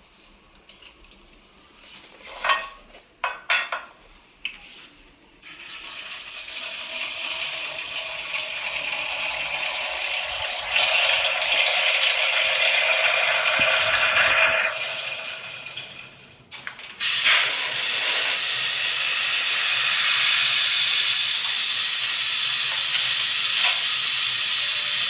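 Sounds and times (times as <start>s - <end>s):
cups and kitchenware clinking: 2.2s - 4.0s.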